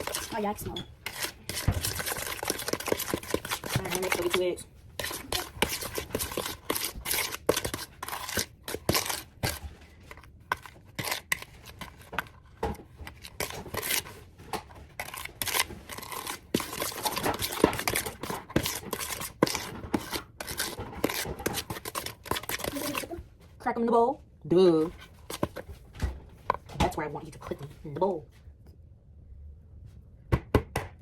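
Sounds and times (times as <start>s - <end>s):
spoon scraping batter in bowl: 0.0s - 23.3s, 24.8s - 25.8s.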